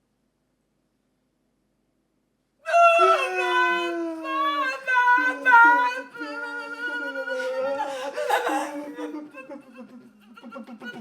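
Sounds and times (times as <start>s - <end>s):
voice holding long falling notes: 2.7s - 11.0s.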